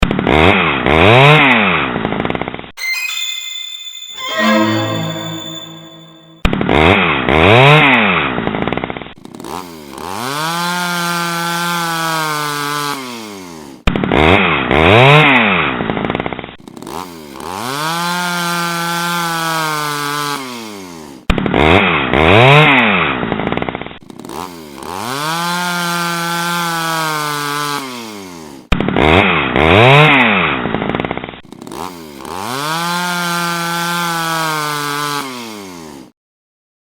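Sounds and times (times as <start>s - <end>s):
chainsaw engine revving: 9.3s - 15.3s, 16.7s - 21.0s, 24.1s - 30.2s, 31.5s - 35.9s.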